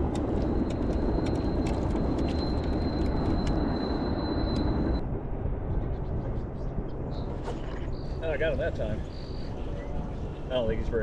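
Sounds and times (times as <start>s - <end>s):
wind and water rumble: 0.0s - 11.0s
thin high whine: 0.6s - 5.0s.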